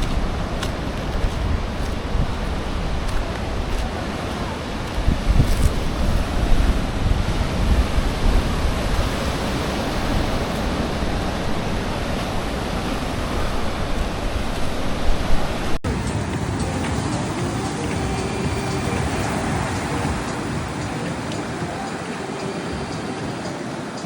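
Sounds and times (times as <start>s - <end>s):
wind buffeting microphone: 0.0s - 15.8s
loud steady rushing noise: 0.0s - 24.0s.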